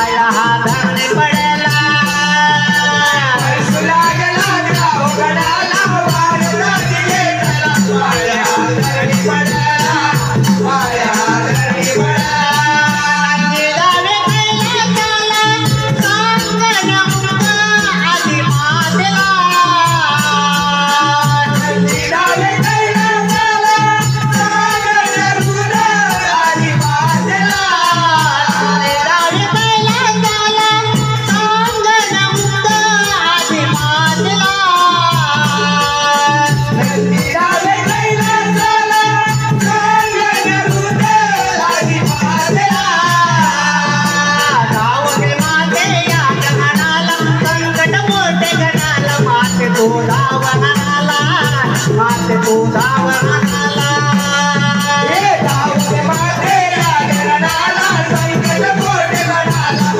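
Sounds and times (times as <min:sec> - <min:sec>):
drums: 0:00.0 - 0:59.9
person singing: 0:00.0 - 0:59.9
quick percussion beat: 0:00.0 - 0:59.9
rattling small percussion: 0:00.0 - 0:59.9.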